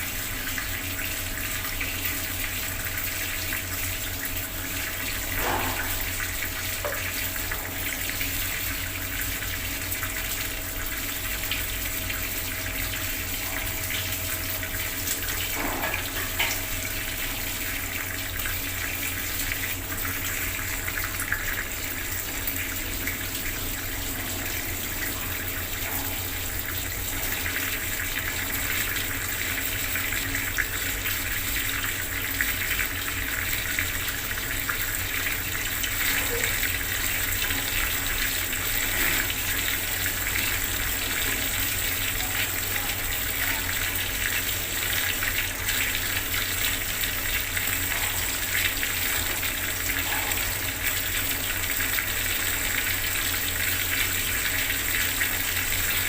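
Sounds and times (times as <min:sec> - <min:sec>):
water drips: 0:00.2 - 0:56.0
tap water splashing: 0:03.1 - 0:09.4, 0:12.9 - 0:21.5, 0:35.8 - 0:52.9.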